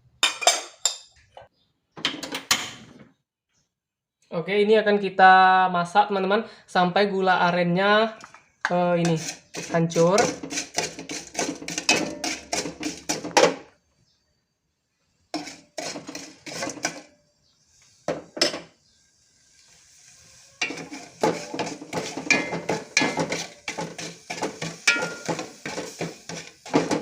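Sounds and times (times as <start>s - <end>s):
utensil scraping in a pot: 9.0s - 13.5s, 15.2s - 27.0s.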